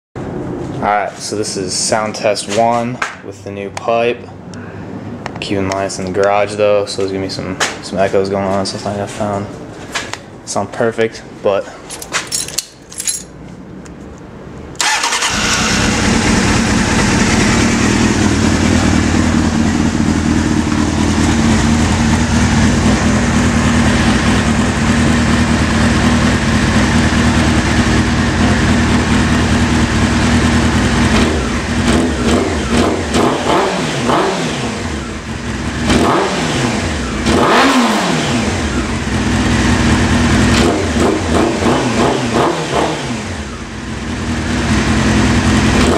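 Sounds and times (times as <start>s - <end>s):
motorcycle engine idling and revving: 14.8s - 45.9s.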